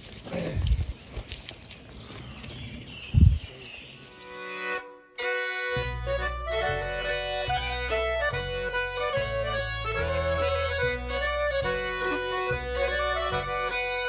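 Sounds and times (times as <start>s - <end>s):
background music with sustained bass: 4.7s - 14.0s.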